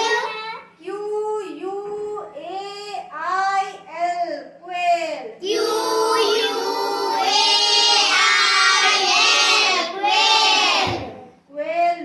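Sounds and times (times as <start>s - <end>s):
children chanting in unison: 5.4s - 11.3s.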